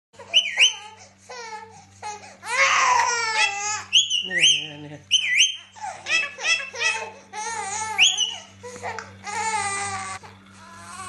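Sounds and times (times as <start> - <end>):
parrot calling: 0.2 - 1.0, 3.3 - 8.6
baby crying and babbling: 0.8 - 3.9, 6.8 - 11.0.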